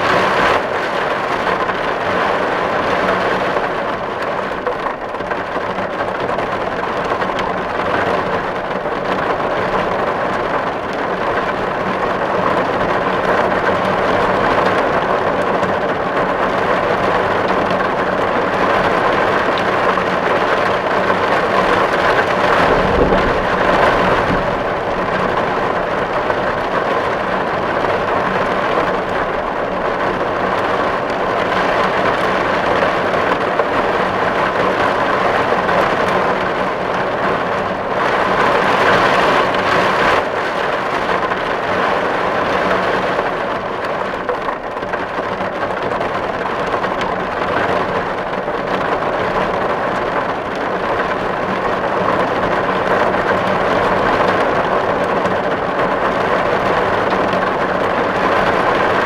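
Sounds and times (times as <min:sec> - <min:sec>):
rain on a tin roof: 0:00.0 - 0:59.0
low rumble: 0:21.5 - 0:28.0.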